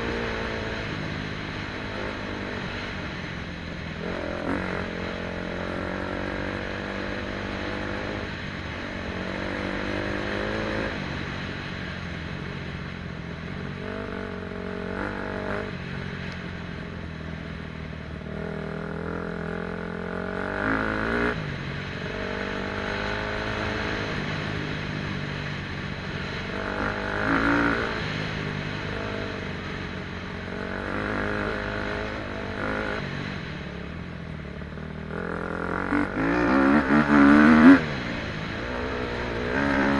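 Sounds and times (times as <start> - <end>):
motocross engine revving: 26.4 - 29.3, 35.0 - 39.9.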